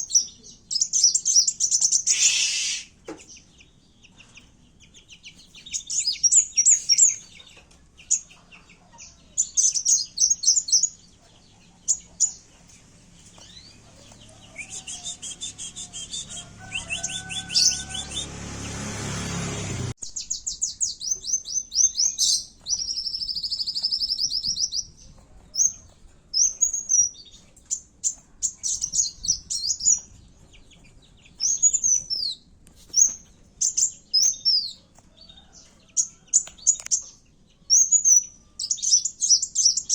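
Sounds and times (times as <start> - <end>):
sunbird chirps and trills: 0.0 - 39.9
noisy rumble: 12.5 - 20.5.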